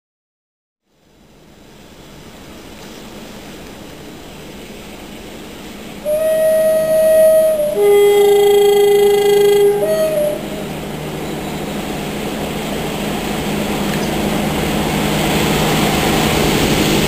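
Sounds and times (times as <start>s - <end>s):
diesel locomotive engines: 1.1s - 17.0s
two-tone air horn: 6.0s - 10.8s.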